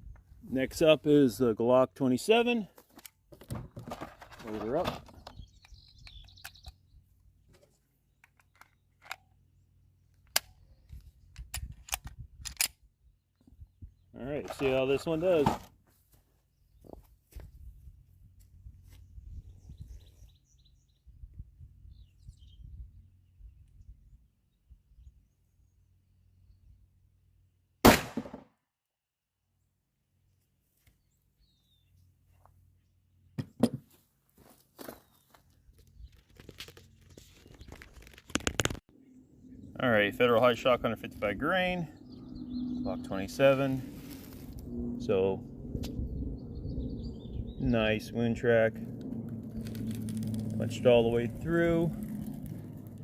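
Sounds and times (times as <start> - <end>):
pistol shot with echo: 27.8 - 28.4.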